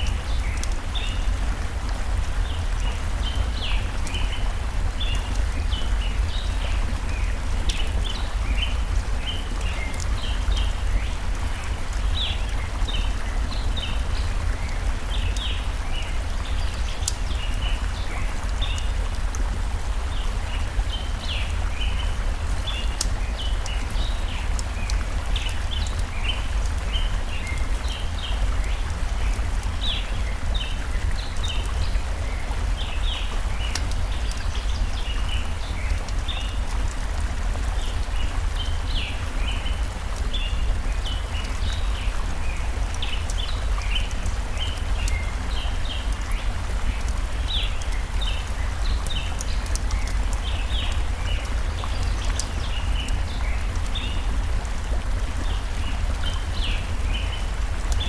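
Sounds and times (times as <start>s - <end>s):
stream flowing: 0.0s - 58.0s
campfire crackling pops: 23.0s - 26.9s, 33.6s - 34.4s.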